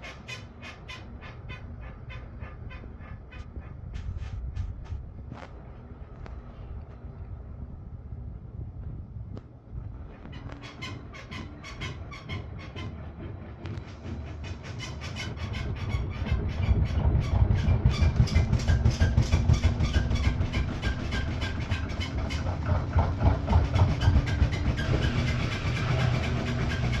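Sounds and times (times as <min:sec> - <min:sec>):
washing machine knocking clatter: 0:11.7 - 0:27.0.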